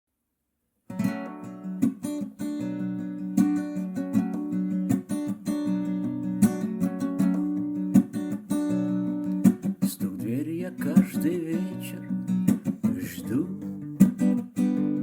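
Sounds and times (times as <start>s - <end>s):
acoustic guitar strumming: 0.9s - 15.0s.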